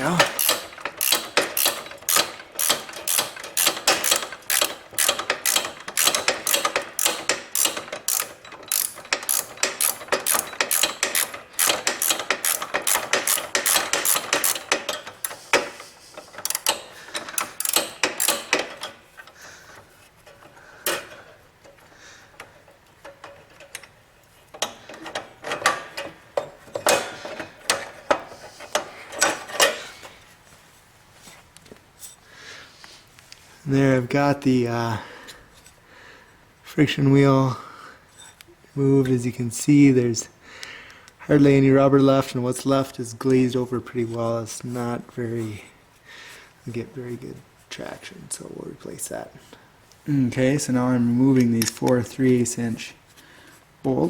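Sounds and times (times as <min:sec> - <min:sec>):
ratchet wrench clicking: 0:00.3 - 0:15.4, 0:16.4 - 0:18.8.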